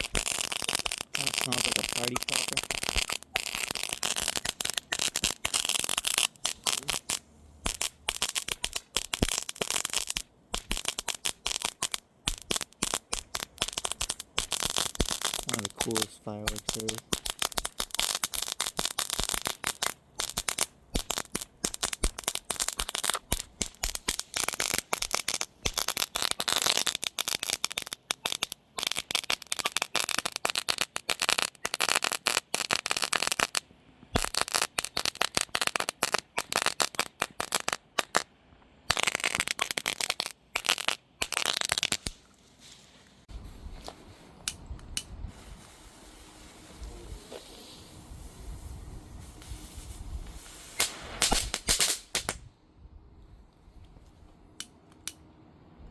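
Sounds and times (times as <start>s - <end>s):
fireworks sizzling and crackling: 0.0s - 52.5s.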